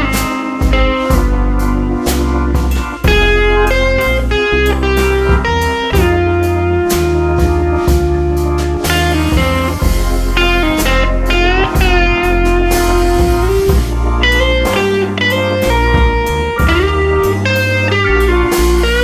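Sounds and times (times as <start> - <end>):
bass: 0.0 - 19.0
drums with steady beat: 0.0 - 19.0
guitar with gliding notes: 0.0 - 19.0.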